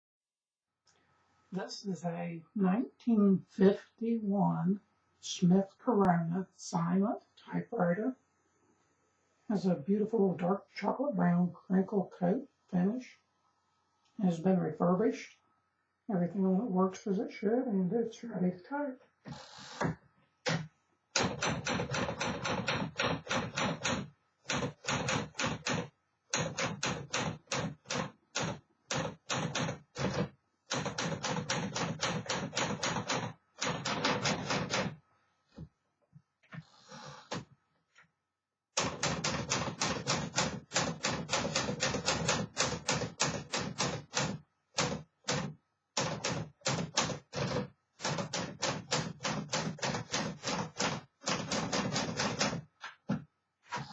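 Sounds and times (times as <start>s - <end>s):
typewriter keystrokes: 21.2s - 34.9s, 38.8s - 52.6s.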